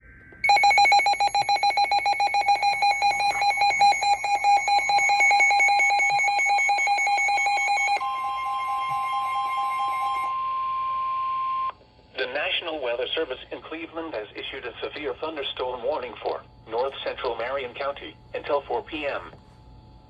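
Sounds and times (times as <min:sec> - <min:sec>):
steady warning alarm tone: 0:00.2 - 0:11.7
rapid buzzy electronic beeping: 0:00.5 - 0:07.9.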